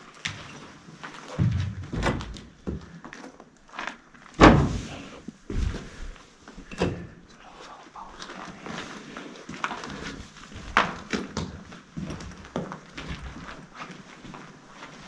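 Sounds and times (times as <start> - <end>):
footsteps and thuds: 1.3 - 3.0, 4.4 - 6.2.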